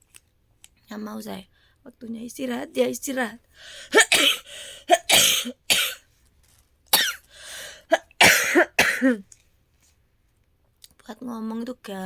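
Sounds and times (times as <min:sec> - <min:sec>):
drawn breath: 0:03.6 - 0:04.9, 0:07.2 - 0:07.9
woman coughing: 0:03.8 - 0:06.0, 0:07.0 - 0:07.2, 0:07.8 - 0:09.2.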